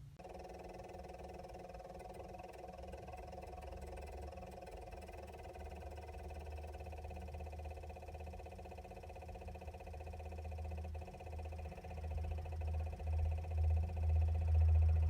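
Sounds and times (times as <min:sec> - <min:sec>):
electrical chattering buzz: 0:00.2 - 0:14.8.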